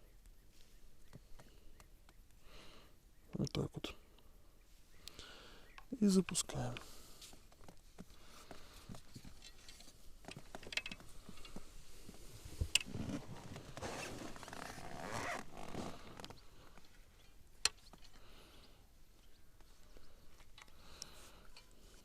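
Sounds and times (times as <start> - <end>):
fishing gear scraping and rustling: 6.4 - 18.2.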